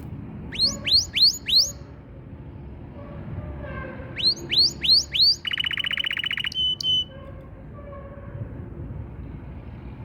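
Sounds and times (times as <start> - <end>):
canary singing: 0.5 - 2.0, 4.2 - 7.2.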